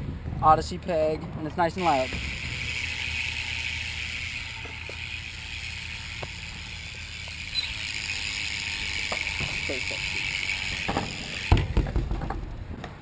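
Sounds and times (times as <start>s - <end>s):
bike hub ratchet clicking: 1.5s - 11.9s.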